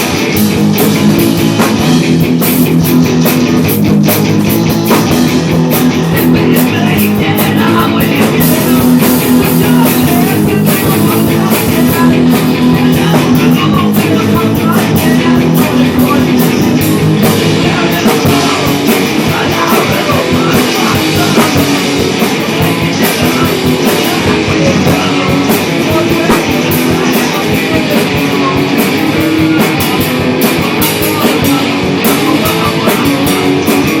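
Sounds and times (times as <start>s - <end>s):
punk rock band playing: 0.0s - 34.0s.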